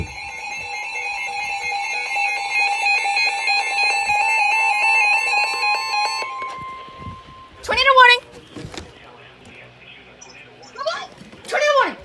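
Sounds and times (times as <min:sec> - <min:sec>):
synthesized alarm jingle: 0:00.0 - 0:08.2.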